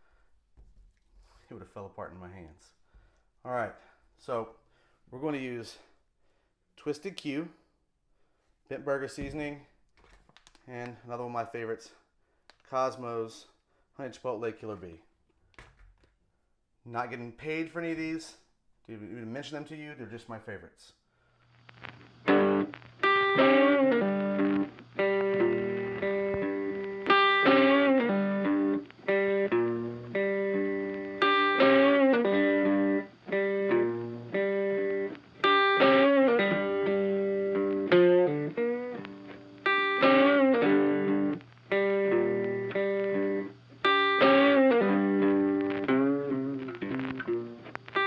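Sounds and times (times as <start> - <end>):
distorted electric guitar chords: 21.6 - 48.0.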